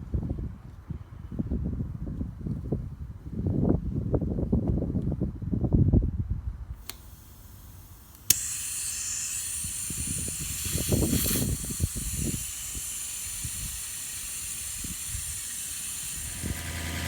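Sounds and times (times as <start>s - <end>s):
valve click: 6.8s - 16.7s
air hissing out of tire: 6.8s - 17.0s.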